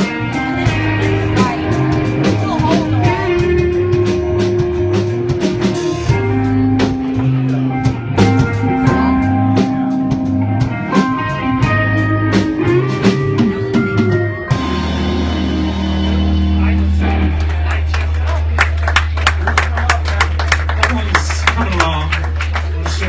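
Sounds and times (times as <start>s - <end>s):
guitar lines: 0.0s - 18.0s
drum kit beat: 0.0s - 22.1s
bass line: 0.0s - 23.0s.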